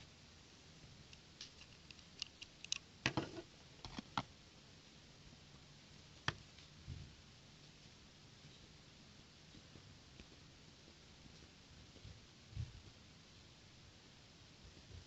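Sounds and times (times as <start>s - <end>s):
plastic bricks clicking: 1.4s - 2.8s.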